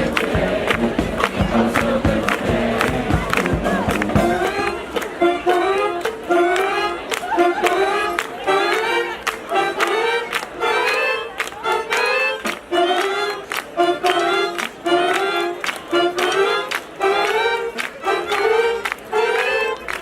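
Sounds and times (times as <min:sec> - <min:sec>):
steady drum beat: 0:00.0 - 0:05.1
brass band horns: 0:00.0 - 0:20.0.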